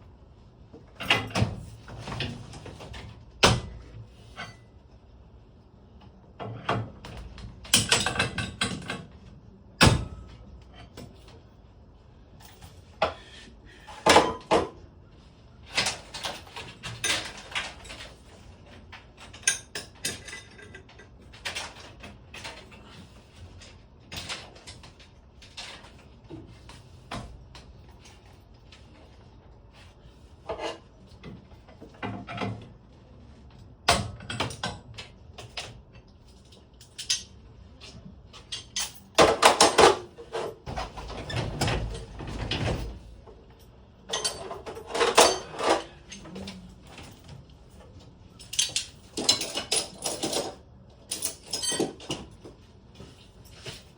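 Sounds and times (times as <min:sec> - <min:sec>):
metal tools clanking and rattling: 0:06.4 - 0:09.1, 0:15.7 - 0:18.4, 0:19.1 - 0:27.1, 0:33.9 - 0:53.9.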